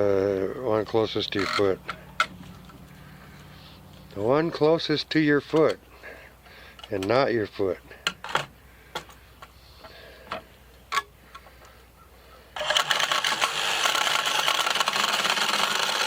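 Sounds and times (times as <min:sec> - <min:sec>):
harsh metalworking noise: 0:12.6 - 0:16.0.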